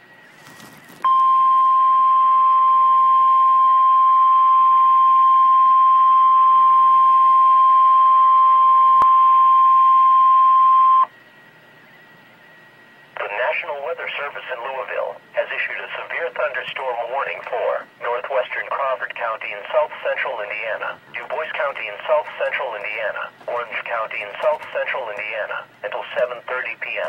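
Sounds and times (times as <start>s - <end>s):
loud steady alarm beep: 1.1s - 11.2s.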